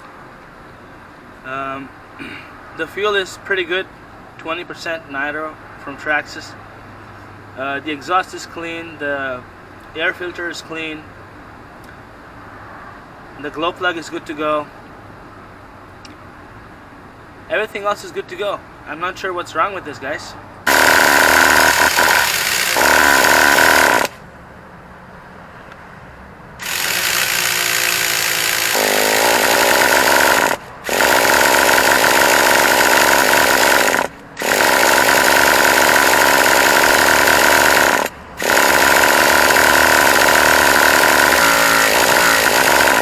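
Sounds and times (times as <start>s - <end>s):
small engine starter spinning: 20.7s - 24.2s, 26.6s - 43.0s.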